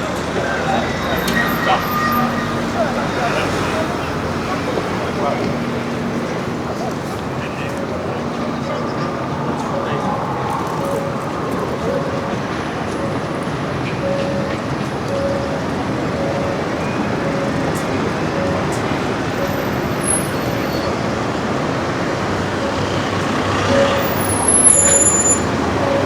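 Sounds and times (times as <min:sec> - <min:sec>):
bus and car engines: 0:00.0 - 0:26.0
short high squeal: 0:00.8 - 0:02.8
faint repeating beep: 0:23.6 - 0:26.0.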